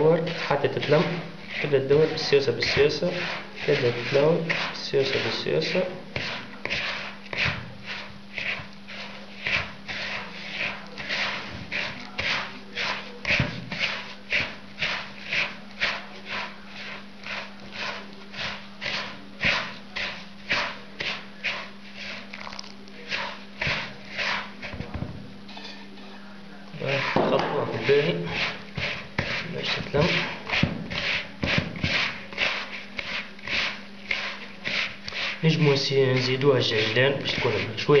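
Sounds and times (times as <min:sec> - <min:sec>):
dough rubbing and scraping in bowl: 0:00.0 - 0:38.0
low electrical hum: 0:00.0 - 0:38.0.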